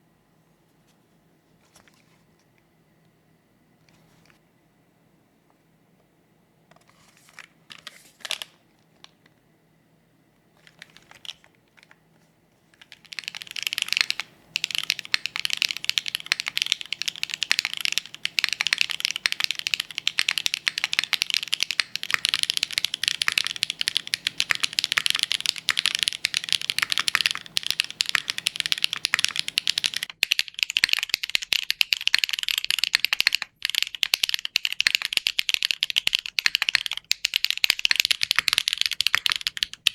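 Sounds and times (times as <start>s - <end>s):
mechanical keyboard typing: 10.6s - 12.0s, 12.8s - 39.9s.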